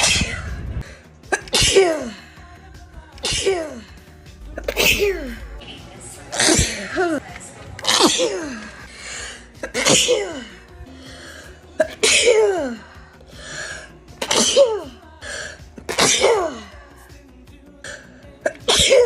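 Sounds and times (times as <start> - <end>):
person sneezing: 1.3 - 2.2, 3.2 - 3.9, 4.6 - 5.6, 6.3 - 7.2, 14.2 - 15.0, 15.8 - 16.7, 18.5 - 19.0
breathy intakes: 8.3 - 12.0, 12.6 - 14.2.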